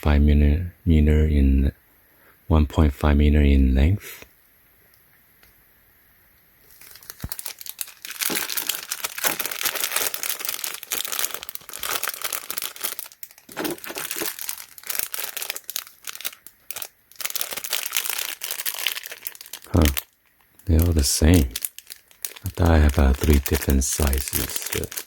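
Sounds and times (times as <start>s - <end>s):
packaging crinkling: 6.6s - 25.0s.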